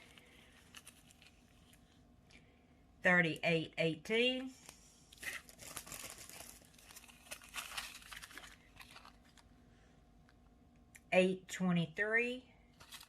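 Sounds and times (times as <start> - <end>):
plastic bags crinkling: 5.2 - 9.5.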